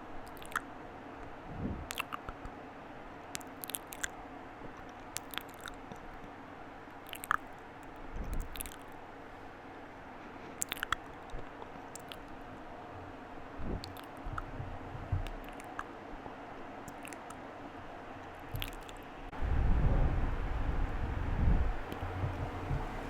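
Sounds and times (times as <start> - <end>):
wet mouth clicks and pops: 0.2 - 0.7, 1.8 - 2.5, 3.4 - 6.0, 7.0 - 7.6, 8.3 - 9.0, 10.6 - 12.4, 13.8 - 14.5, 15.2 - 15.9, 16.9 - 17.4, 18.5 - 19.1.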